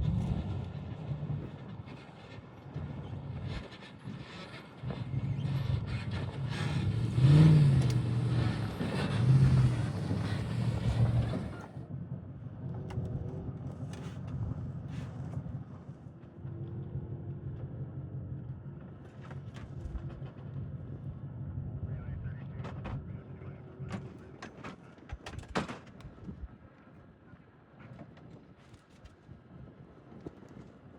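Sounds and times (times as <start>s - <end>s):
dull engine rumble: 0.0s - 25.2s
engine revving: 3.4s - 11.8s.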